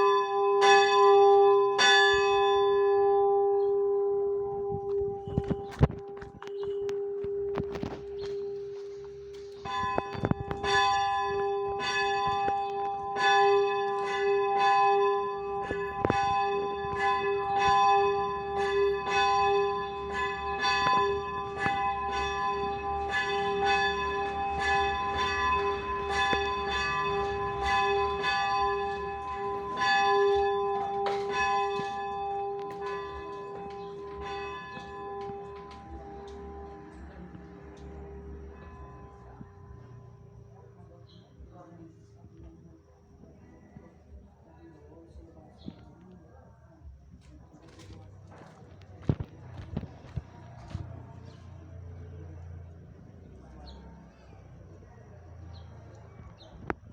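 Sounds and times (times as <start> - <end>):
bell rung rapidly: 9.7 - 39.8.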